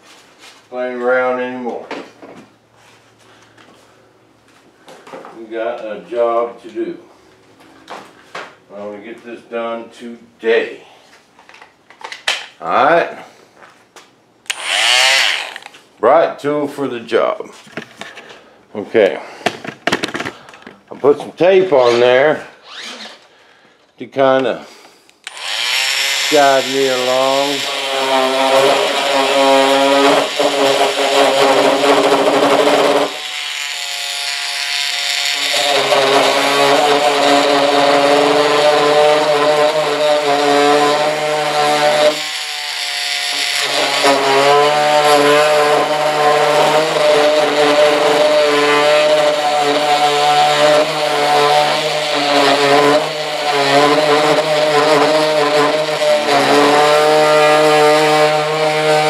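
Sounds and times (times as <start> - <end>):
power tool motor buzzing: 14.5 - 15.8, 21.8 - 23.3, 25.2 - 59.0.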